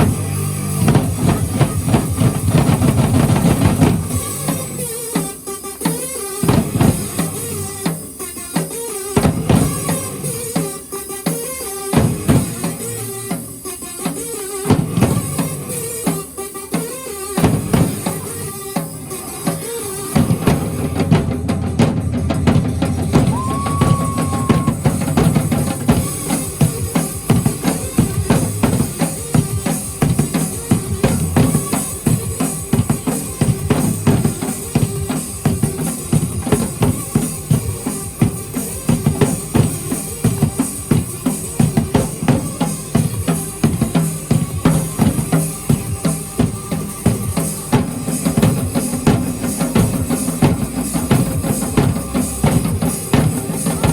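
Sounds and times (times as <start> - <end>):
drum ensemble playing fast beat: 0.0 - 53.9
brief high tone: 23.2 - 24.9.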